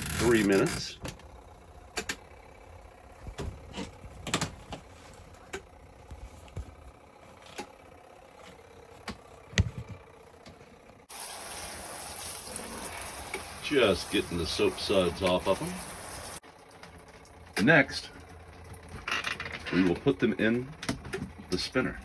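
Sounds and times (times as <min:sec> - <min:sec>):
washing machine motor hum: 0:00.0 - 0:22.0
washing machine wash noise: 0:11.0 - 0:22.0.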